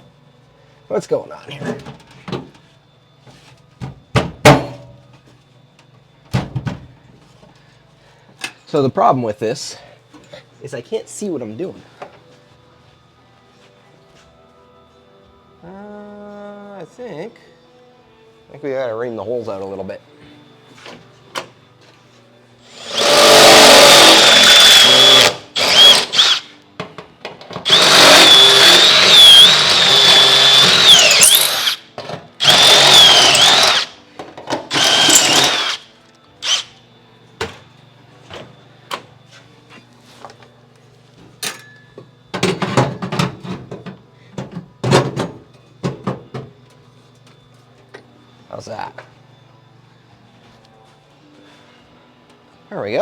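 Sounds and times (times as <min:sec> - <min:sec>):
power drill whining: 0:22.7 - 0:26.5, 0:27.6 - 0:34.0, 0:34.7 - 0:36.8.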